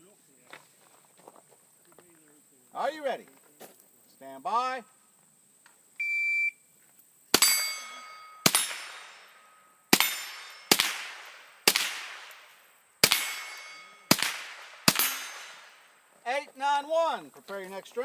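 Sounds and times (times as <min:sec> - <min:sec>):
shot timer beep: 0:06.0 - 0:06.6
rifle shots: 0:07.3 - 0:16.0
steel target plate clanging: 0:07.4 - 0:10.8, 0:13.0 - 0:14.2, 0:14.9 - 0:15.8.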